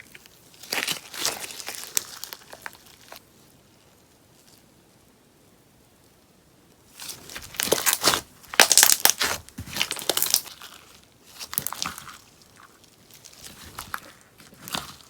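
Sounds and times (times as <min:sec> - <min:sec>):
slime crackling and popping: 0:00.0 - 0:03.2, 0:07.0 - 0:15.0.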